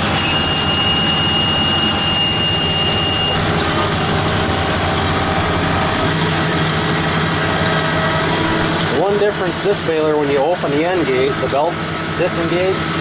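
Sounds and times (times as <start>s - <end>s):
high-pitched warning beep: 0.0s - 3.5s
tractor diesel engine running: 0.0s - 13.0s.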